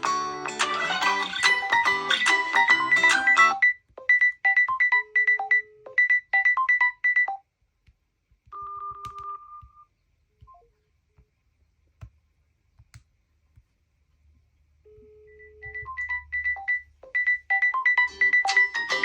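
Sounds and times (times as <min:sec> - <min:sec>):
electronic ringtone melody: 0:00.0 - 0:07.4, 0:15.7 - 0:19.0
steady electronic beep: 0:16.1 - 0:18.7.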